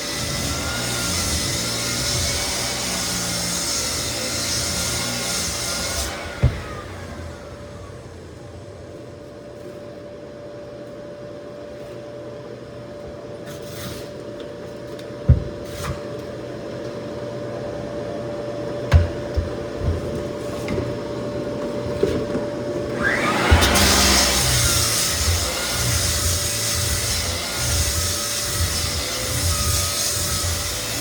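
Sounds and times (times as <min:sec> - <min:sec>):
floor sander motor running: 0:00.0 - 0:09.2, 0:22.8 - 0:31.0.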